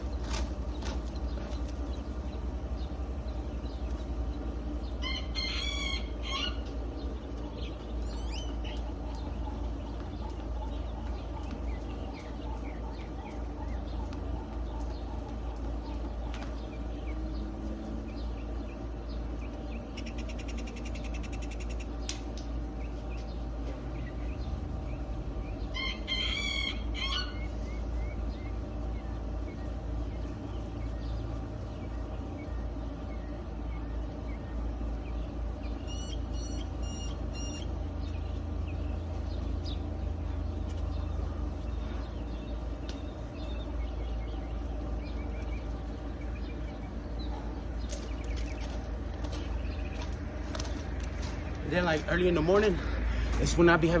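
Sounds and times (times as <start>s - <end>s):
rooster crowing: 5.0s - 6.8s, 25.7s - 27.7s.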